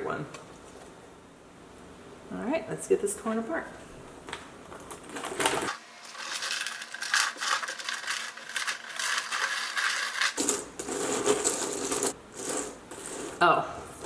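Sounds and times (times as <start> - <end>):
puzzle pieces pulled apart: 5.4 - 10.6
puzzle pieces clattering: 5.4 - 13.1.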